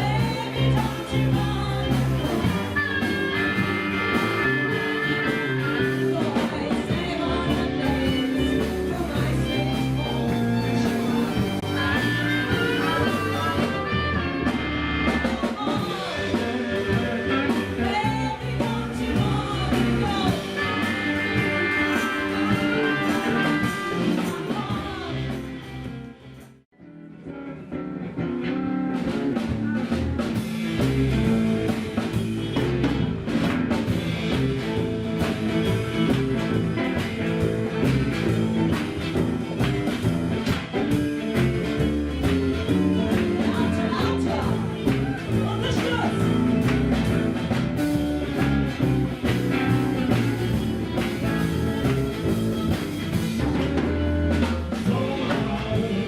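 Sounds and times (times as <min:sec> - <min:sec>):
song with guitar: 0:00.0 - 0:56.0.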